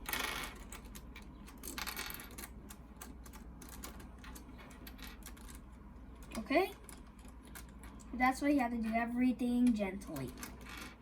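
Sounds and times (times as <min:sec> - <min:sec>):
plastic puzzle pieces clicking: 0:00.0 - 0:08.1.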